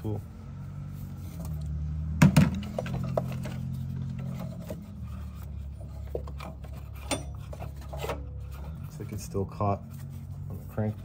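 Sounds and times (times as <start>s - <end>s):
belt and tool rubbing and scraping: 2.7s - 11.0s.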